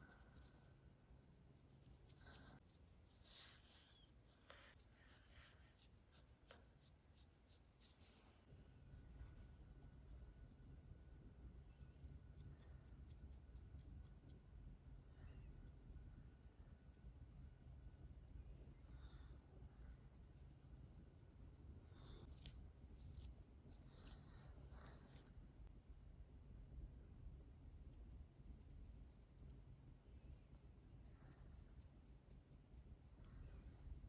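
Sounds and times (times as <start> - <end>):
low steady rumble: 8.2 - 20.4.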